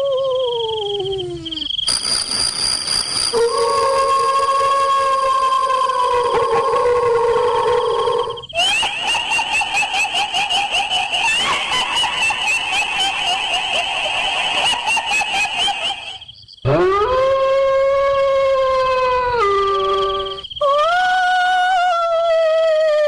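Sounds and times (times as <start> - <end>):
loud warbling wail: 3.3 - 21.0.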